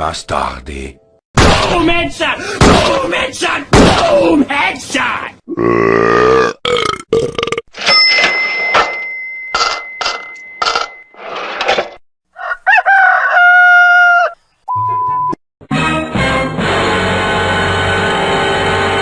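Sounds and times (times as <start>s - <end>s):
burp-like sound: 5.5s - 7.7s.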